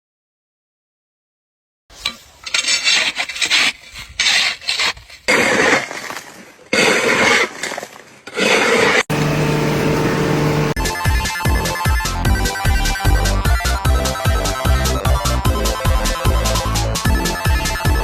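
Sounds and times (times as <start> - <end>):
rough rasping scrapes: 1.9 - 9.2.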